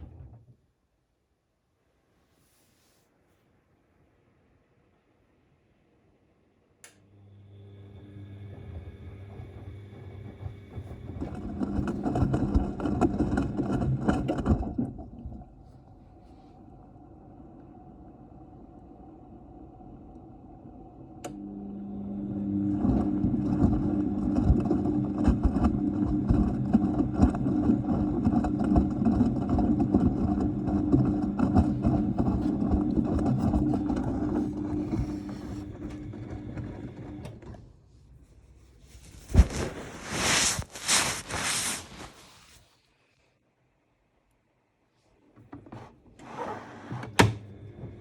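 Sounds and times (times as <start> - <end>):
washing machine motor hum: 7.0 - 16.0, 16.6 - 37.7, 45.3 - 48.0.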